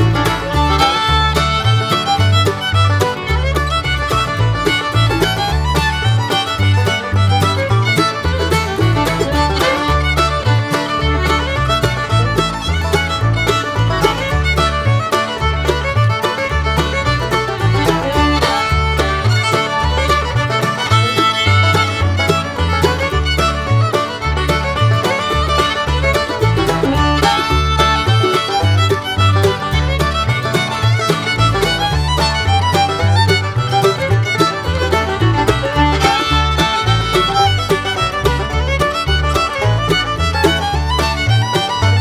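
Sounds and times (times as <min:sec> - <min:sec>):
fiddle melody: 0:00.0 - 0:42.0
rhythmic bass line: 0:00.0 - 0:42.0.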